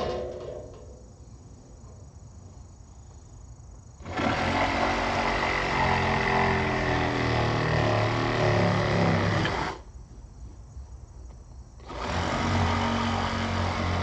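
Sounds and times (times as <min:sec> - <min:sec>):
reciprocating saw running: 0:04.0 - 0:09.8, 0:11.8 - 0:14.0.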